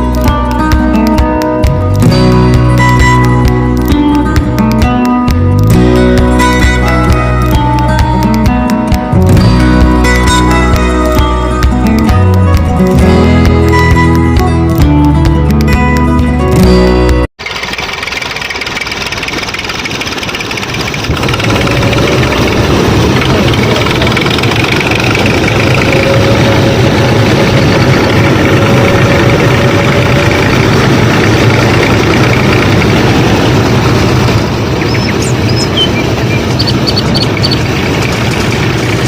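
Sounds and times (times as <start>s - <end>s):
plucked guitar music: 0.0s - 17.3s
small motor running: 17.5s - 33.2s.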